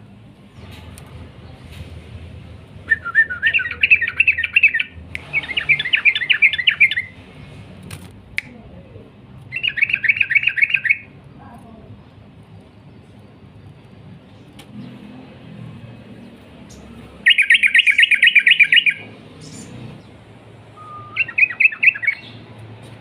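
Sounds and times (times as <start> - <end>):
bird chattering song: 3.0 - 7.2, 9.5 - 11.1, 16.6 - 20.2, 20.8 - 22.5.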